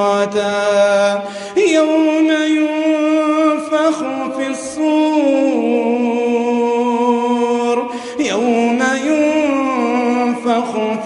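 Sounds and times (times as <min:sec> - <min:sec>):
man chanting melodically: 0:00.0 - 0:11.0.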